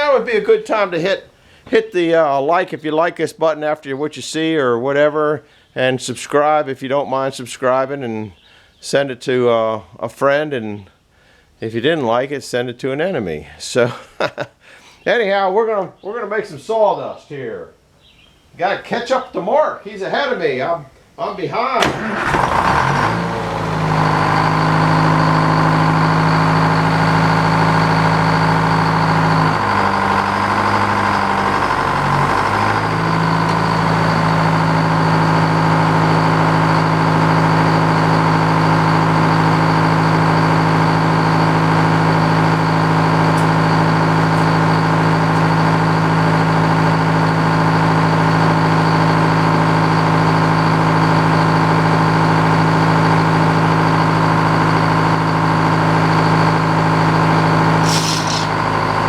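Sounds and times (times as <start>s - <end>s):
sawmill blade drone with high whine: 22.2s - 46.4s.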